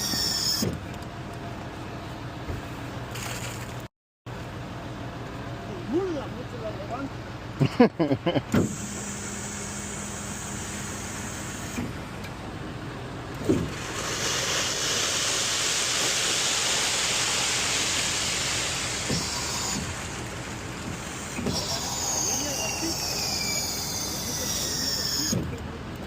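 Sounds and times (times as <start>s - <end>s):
concrete mixer truck rushing hiss: 8.6s - 25.4s.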